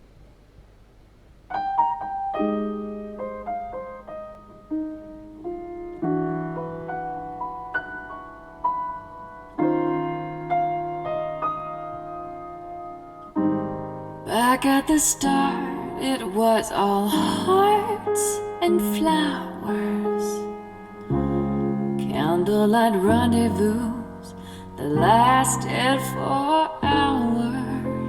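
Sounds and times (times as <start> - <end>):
solo piano jazz ballad: 1.4 - 28.0.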